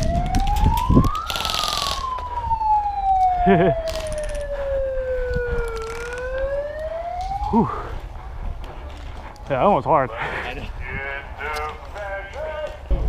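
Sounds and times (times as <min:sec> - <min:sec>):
siren wailing: 0:00.0 - 0:08.0.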